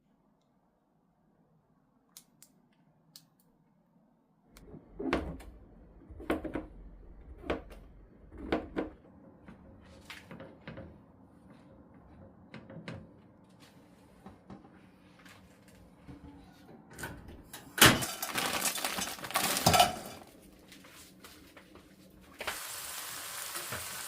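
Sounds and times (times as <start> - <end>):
low rumble: 4.6 - 10.0
objects knocking and clattering: 17.7 - 20.3.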